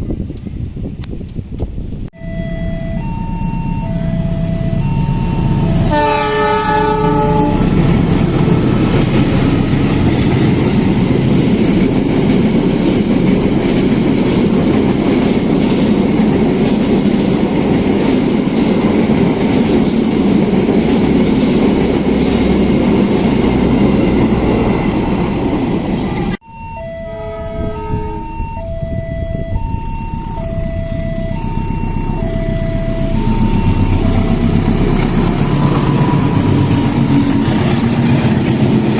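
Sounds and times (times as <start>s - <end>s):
two-tone crossing warning signal: 2.2s - 10.8s, 26.0s - 37.6s
road vehicle engines: 2.6s - 26.4s, 28.3s - 38.9s
train horn: 3.9s - 8.0s, 26.8s - 29.5s
train wheels rumbling on rails: 4.6s - 26.4s, 29.5s - 38.9s.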